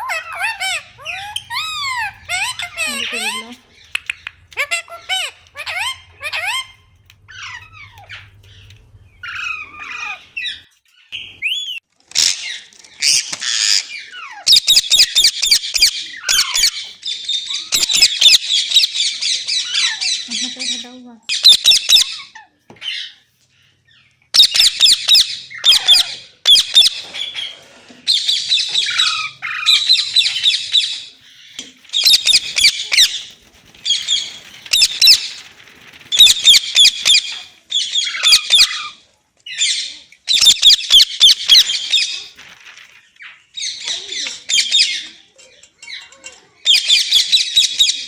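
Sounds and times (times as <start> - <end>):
parakeet screeching: 0.0 - 3.7, 4.5 - 20.5, 24.4 - 27.5, 28.1 - 39.0.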